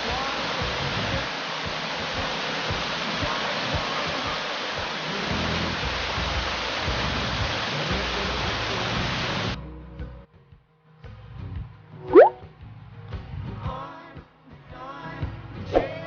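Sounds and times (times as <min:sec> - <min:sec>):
creek water rushing: 0:00.0 - 0:09.6.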